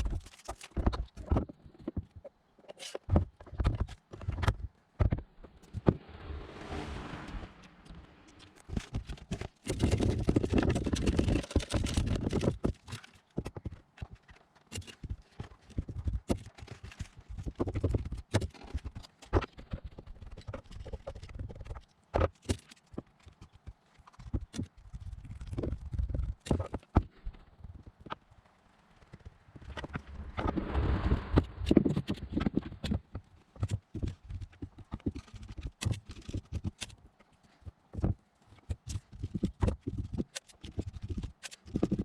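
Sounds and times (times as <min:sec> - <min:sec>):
rough noise: 0:05.3 - 0:10.3, 0:29.4 - 0:33.1.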